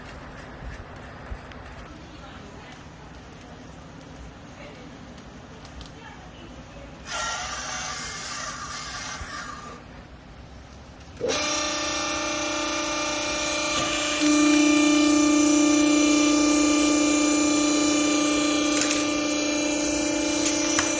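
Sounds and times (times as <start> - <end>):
hydraulic pump motor humming: 11.2 - 20.9.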